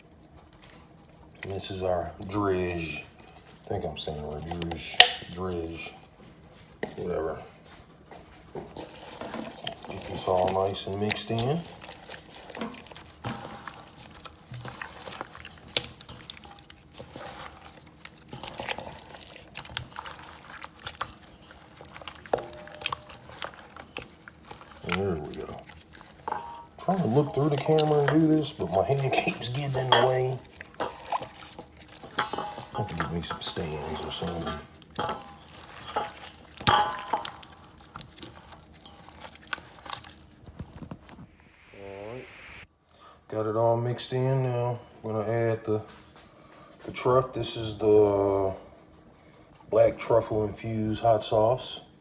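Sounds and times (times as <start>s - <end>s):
wet squelches of mixing by hand: 0.0s - 41.3s.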